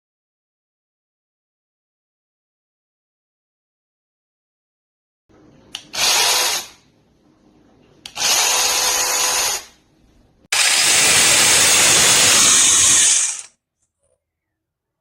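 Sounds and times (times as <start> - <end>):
electric chainsaw running: 10.5 - 13.5.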